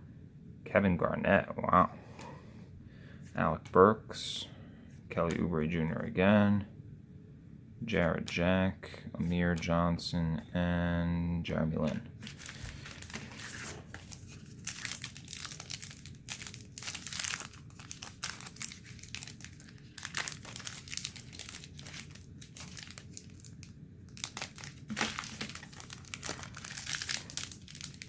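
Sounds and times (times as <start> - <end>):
wrapper crinkling: 12.2 - 28.0.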